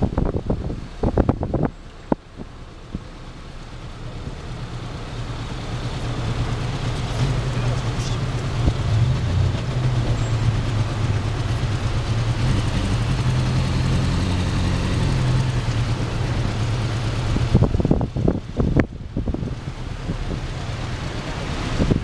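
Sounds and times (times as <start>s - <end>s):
wind buffeting microphone: 0.0s - 3.1s, 8.2s - 22.0s
car engine and road hum: 0.0s - 22.0s.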